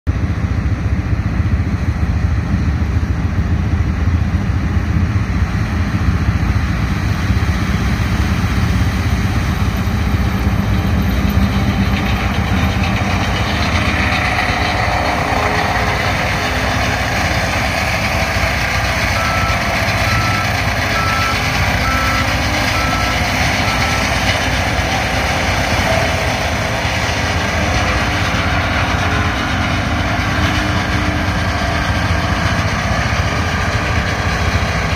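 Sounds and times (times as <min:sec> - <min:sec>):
combine harvester running: 0:00.1 - 0:34.9
warning alarm beeps: 0:19.1 - 0:24.2.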